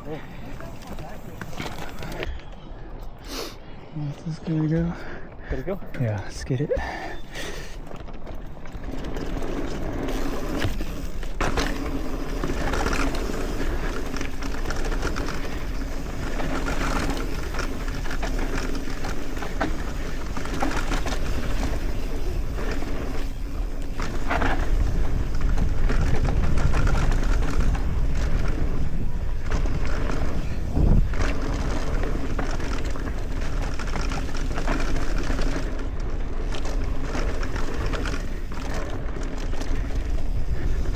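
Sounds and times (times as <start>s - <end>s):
bike tyre roar on dirt: 0.0s - 2.3s, 6.8s - 40.9s
bike knocking and rattling: 0.0s - 2.7s, 6.8s - 40.9s
wind rumble on microphone: 11.7s - 40.9s.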